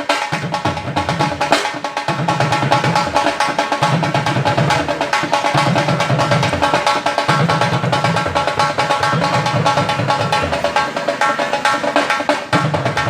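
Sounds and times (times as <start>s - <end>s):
fast drumming: 0.0s - 13.0s
steady held melody: 3.1s - 13.0s.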